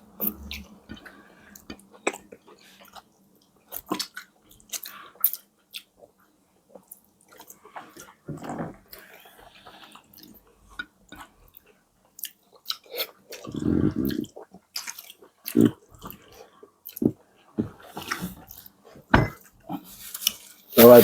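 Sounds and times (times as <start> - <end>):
chewing and mouth smacks: 0.2 - 8.2, 9.9 - 17.2
low voice: 20.8 - 21.0.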